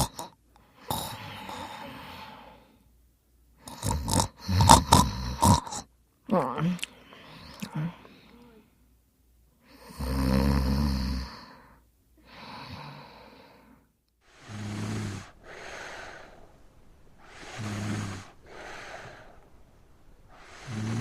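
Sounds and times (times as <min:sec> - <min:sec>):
child snoring: 0:00.0 - 0:02.6, 0:03.6 - 0:05.9, 0:09.8 - 0:11.7, 0:14.3 - 0:16.6, 0:17.2 - 0:19.4, 0:20.3 - 0:21.0
breathy out-breath: 0:00.6 - 0:02.9, 0:06.8 - 0:08.8, 0:11.2 - 0:21.0.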